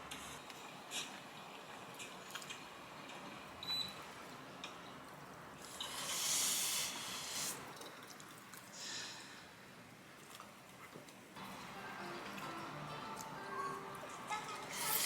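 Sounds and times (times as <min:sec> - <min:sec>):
high hiss: 0:05.7 - 0:07.6.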